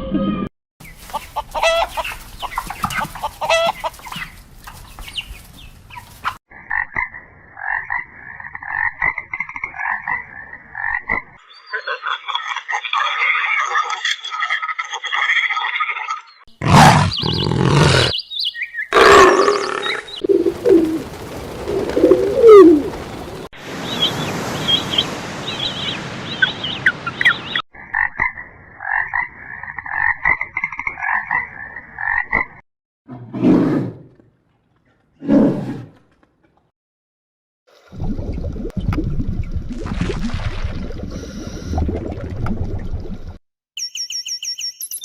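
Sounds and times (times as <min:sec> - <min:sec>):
animal calls: 0:16.6 - 0:18.2, 0:18.9 - 0:23.3.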